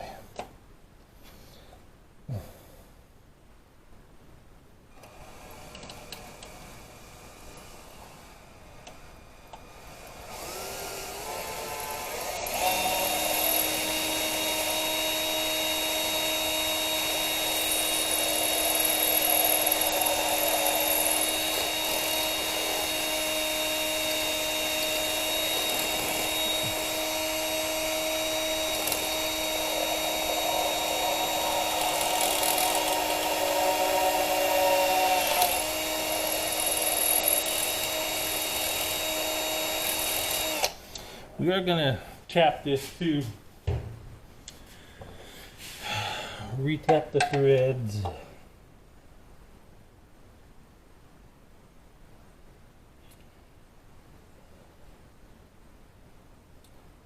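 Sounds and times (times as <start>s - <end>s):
power drill running: 5.0s - 40.8s.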